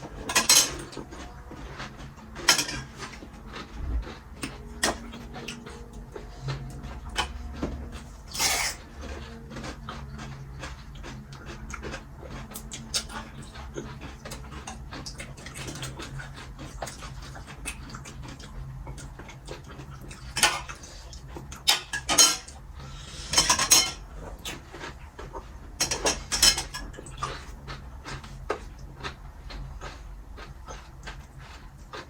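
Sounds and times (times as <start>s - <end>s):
crunching food: 0.0s - 22.7s, 24.0s - 32.0s
slurping: 0.7s - 19.7s.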